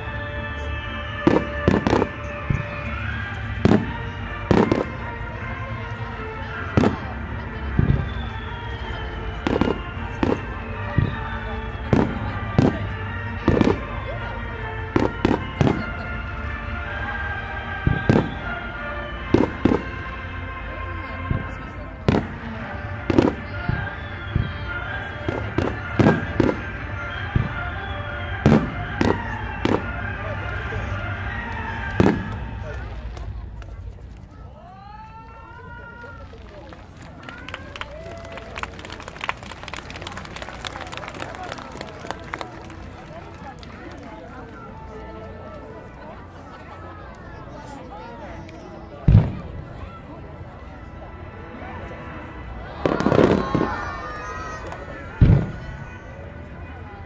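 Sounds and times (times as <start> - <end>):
music playing: 0.0 - 57.0
fireworks bursting with sharp bangs: 0.1 - 5.8, 6.6 - 14.2, 14.9 - 16.1, 17.6 - 20.1, 21.3 - 33.5, 49.1 - 49.6, 52.8 - 56.0.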